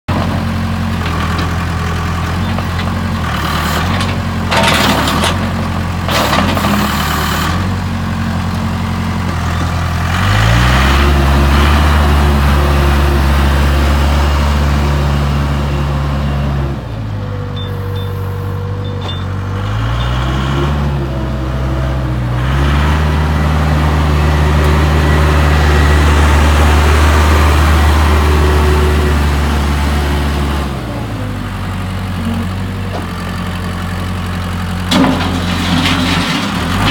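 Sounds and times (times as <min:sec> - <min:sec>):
backhoe diesel engine revving: 0:00.1 - 0:36.9.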